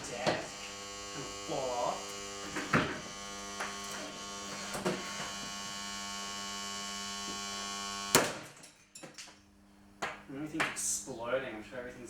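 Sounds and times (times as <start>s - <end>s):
box fan motor humming: 0.0s - 8.4s.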